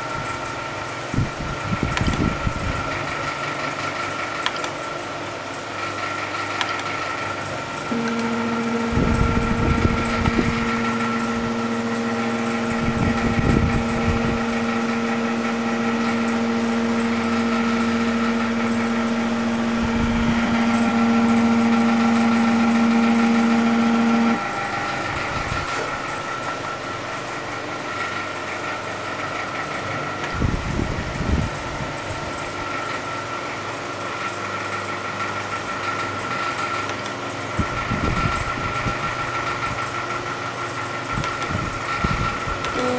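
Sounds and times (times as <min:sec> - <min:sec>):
low hum: 0:07.8 - 0:28.2, 0:42.0 - 0:42.9
short low thumps: 0:08.1 - 0:15.0.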